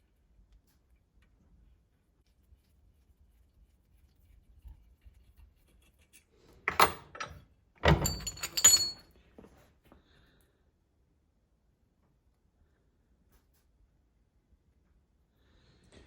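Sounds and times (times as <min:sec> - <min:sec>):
hard parts knocking: 0:06.7 - 0:09.0
metallic clinks: 0:07.9 - 0:09.1.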